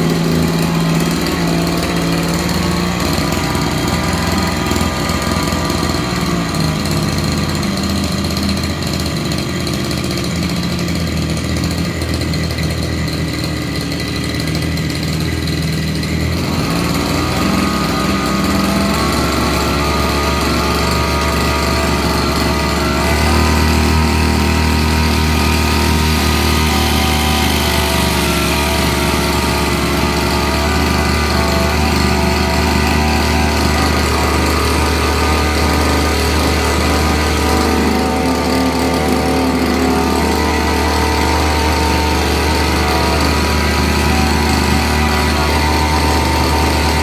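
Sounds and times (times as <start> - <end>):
small petrol engine running: 0.0 - 47.0.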